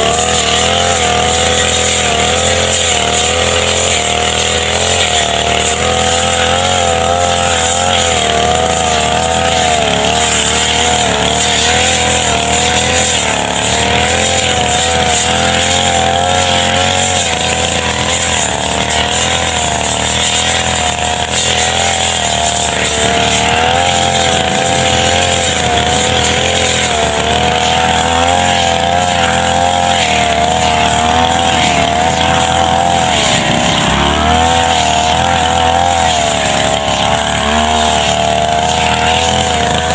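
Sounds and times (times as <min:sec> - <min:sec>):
brush cutter engine running: 0:00.0 - 0:39.9.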